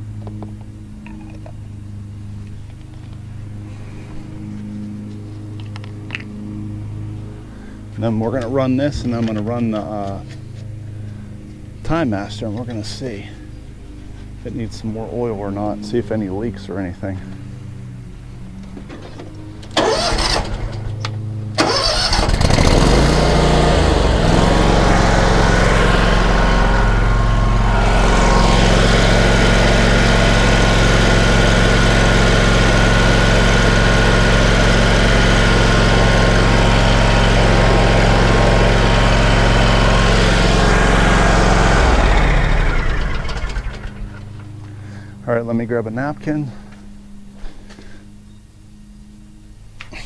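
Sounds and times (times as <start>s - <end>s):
mower engine starting and revving: 18.7s - 45.2s.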